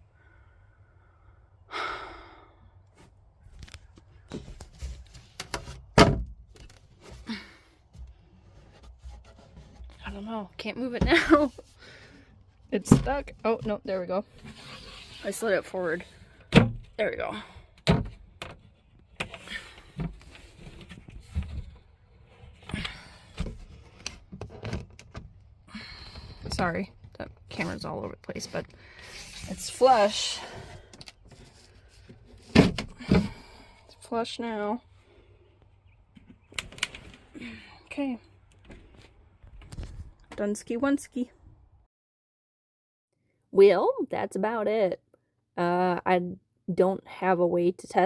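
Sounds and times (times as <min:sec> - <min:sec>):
breathy sigh: 0:00.2 - 0:02.8.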